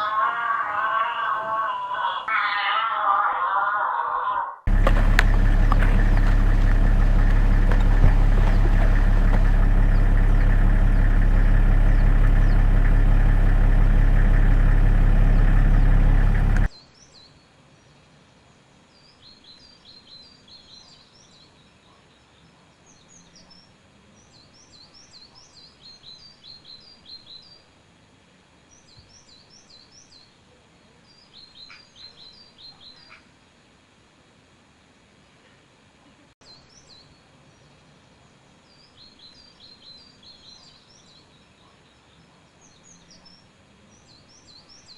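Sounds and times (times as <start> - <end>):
loud steady low hum: 4.7 - 16.7
small birds chirping: 4.7 - 27.8, 31.0 - 33.3, 36.4 - 44.9.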